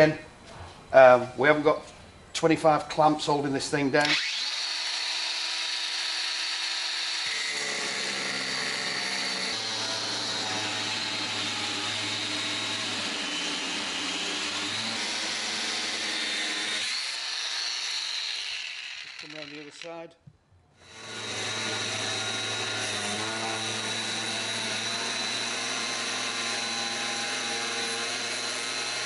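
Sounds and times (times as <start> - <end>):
angle grinder cutting steel: 4.0 - 20.0, 20.8 - 29.0.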